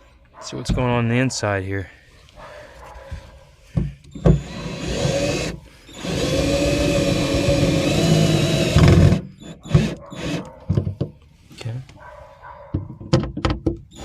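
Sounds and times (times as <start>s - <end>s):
power drill driving screws: 4.1s - 10.5s
knocks: 12.7s - 13.8s.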